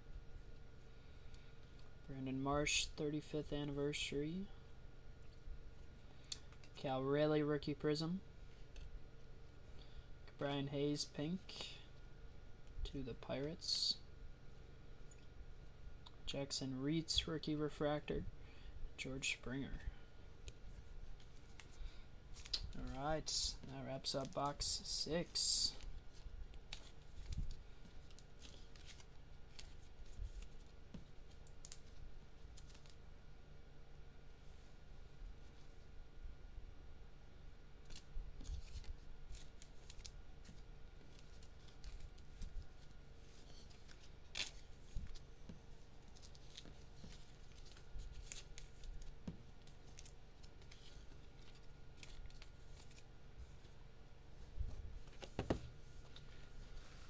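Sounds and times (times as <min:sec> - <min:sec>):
trading cards and packaging rustling: 0:20.5 - 0:33.0, 0:37.8 - 0:53.8.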